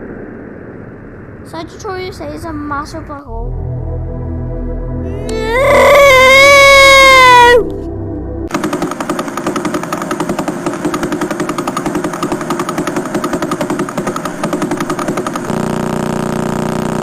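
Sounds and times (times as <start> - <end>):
rapid buzzing pulse: 8.5 - 17.0.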